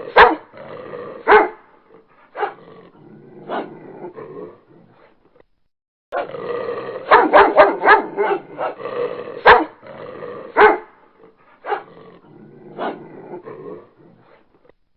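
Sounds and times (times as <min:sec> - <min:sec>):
dog barking: 0:00.1 - 0:00.5, 0:01.2 - 0:01.7, 0:02.3 - 0:02.6, 0:03.5 - 0:03.7, 0:07.0 - 0:08.8, 0:09.4 - 0:09.8, 0:10.5 - 0:11.0, 0:11.6 - 0:11.9, 0:12.8 - 0:13.0.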